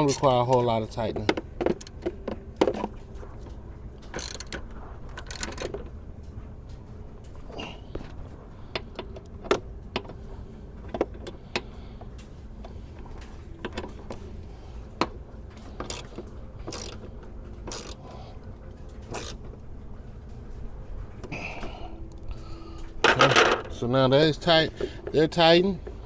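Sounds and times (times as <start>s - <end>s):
ratchet clicking: 4.0s - 5.8s, 15.8s - 18.1s, 19.0s - 19.4s.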